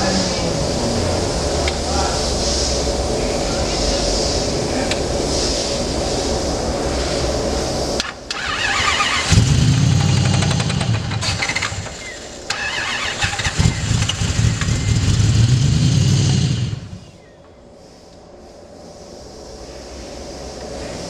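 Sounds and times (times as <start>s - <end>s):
car engine cranking and starting: 8.0s - 17.1s.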